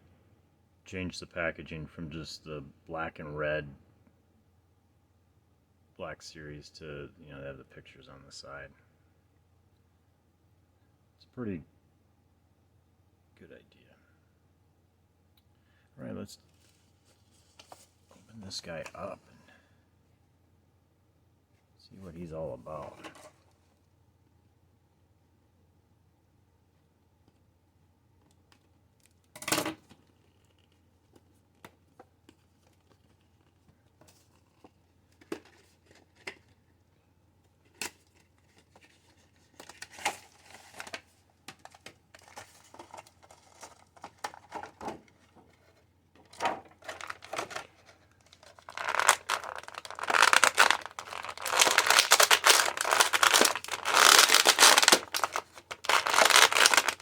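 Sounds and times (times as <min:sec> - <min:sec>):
packaging crinkling and tearing: 0:37.6 - 0:44.8, 0:46.2 - 0:57.0.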